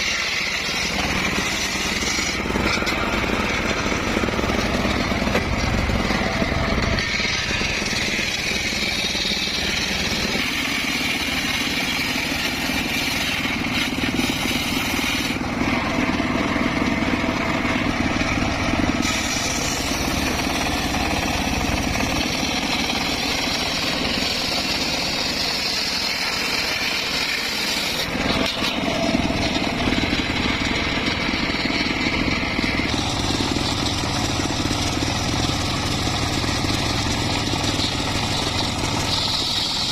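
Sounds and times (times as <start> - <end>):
circular saw cutting wood: 0.0 - 39.9.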